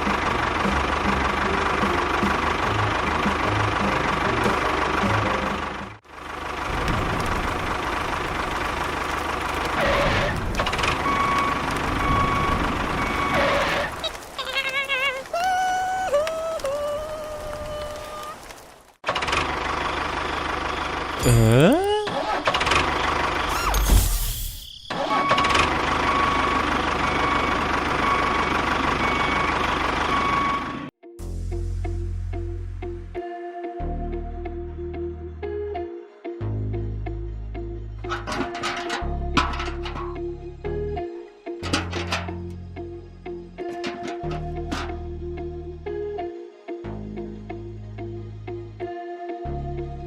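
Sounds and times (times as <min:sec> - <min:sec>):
small engine running: 0:00.0 - 0:13.8.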